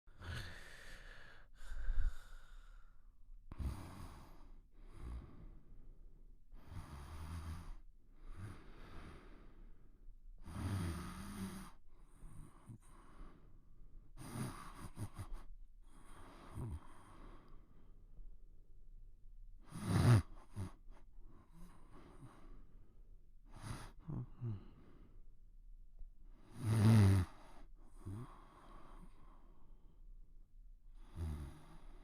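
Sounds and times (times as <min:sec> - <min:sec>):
person snoring and breathing heavily: 0:00.1 - 0:05.8, 0:06.6 - 0:09.8, 0:10.4 - 0:13.5, 0:14.1 - 0:17.7, 0:19.6 - 0:22.7, 0:23.5 - 0:25.1, 0:26.4 - 0:29.6, 0:31.0 - 0:32.0.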